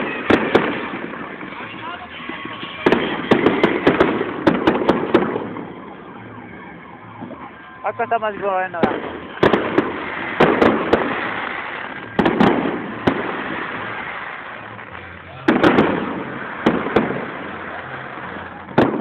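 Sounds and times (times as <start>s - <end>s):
fireworks exploding: 0.0s - 19.0s.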